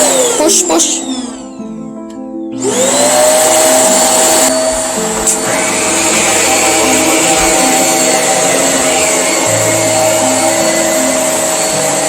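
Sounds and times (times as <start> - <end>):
vacuum cleaner running: 0.0 - 1.8, 2.4 - 12.0.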